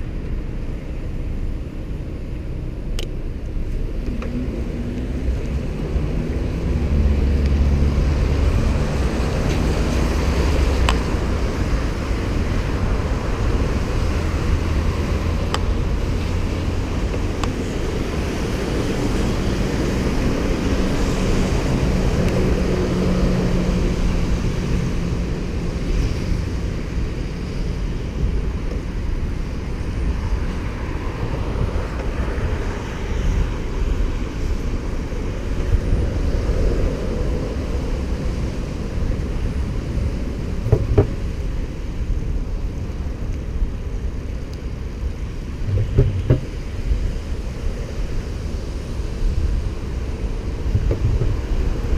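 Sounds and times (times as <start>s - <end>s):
bicycle road noise: 0.0s - 51.9s
wind rushing over microphone: 0.0s - 51.9s
passing motor vehicle engine: 3.7s - 27.8s, 45.2s - 51.9s
short knocks: 45.7s - 46.5s.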